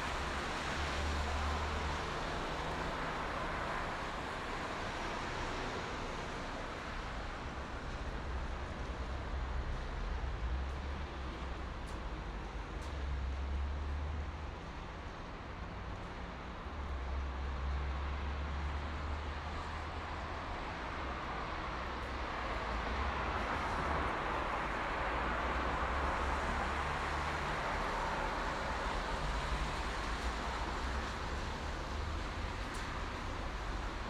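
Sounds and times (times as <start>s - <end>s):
highway traffic: 0.0s - 34.0s.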